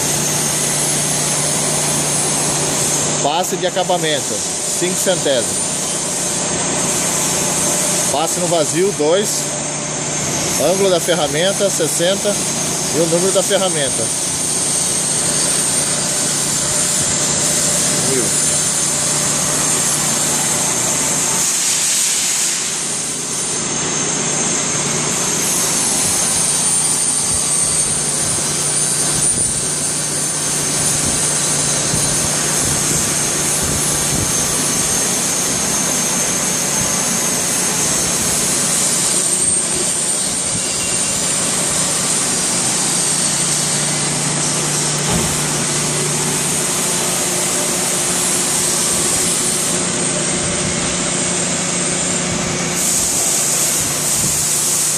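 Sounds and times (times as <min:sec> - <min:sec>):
lathe running with high whine: 0:00.0 - 0:54.9.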